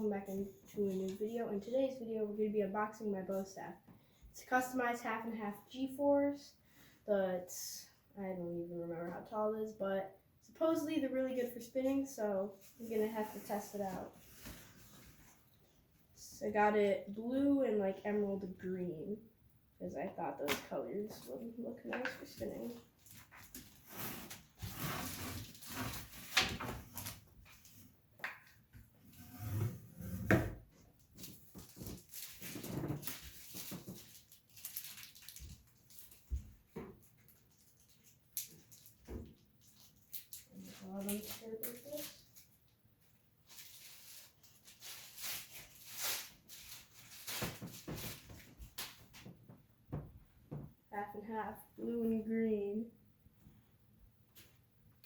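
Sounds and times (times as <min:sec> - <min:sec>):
rustling and handling: 0:11.8 - 0:16.0, 0:21.0 - 0:29.5, 0:30.7 - 0:49.7
package rubbing and scraping: 0:23.8 - 0:26.4.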